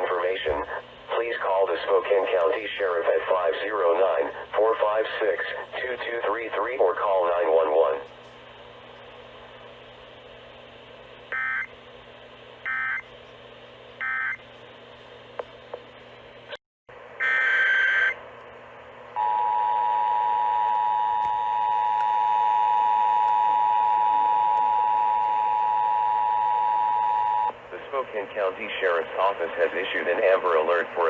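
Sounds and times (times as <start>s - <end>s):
radio static and hum: 0.0s - 9.9s, 19.2s - 31.0s.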